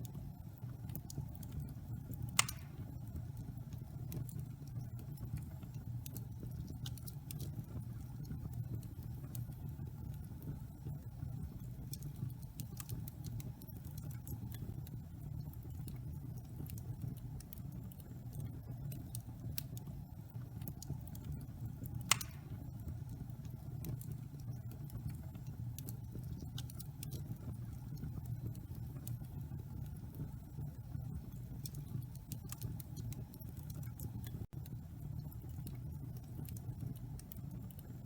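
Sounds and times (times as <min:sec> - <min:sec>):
wood fire crackling: 0:00.0 - 0:38.0.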